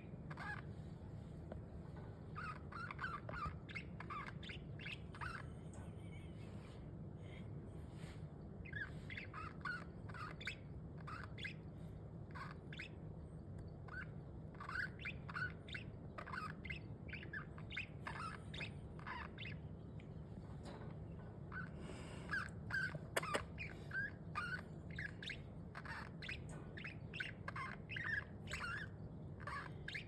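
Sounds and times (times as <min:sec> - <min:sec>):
budgerigars chirping: 0:00.0 - 0:00.8, 0:02.2 - 0:05.5, 0:08.0 - 0:19.7, 0:21.4 - 0:30.0
steady low hum: 0:00.0 - 0:30.0.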